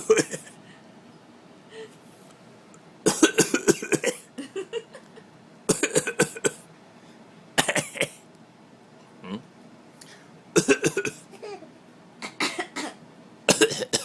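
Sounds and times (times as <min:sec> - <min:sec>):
person fake coughing: 0:00.0 - 0:00.6, 0:03.1 - 0:04.7, 0:05.7 - 0:06.6, 0:07.6 - 0:08.2, 0:10.6 - 0:14.0.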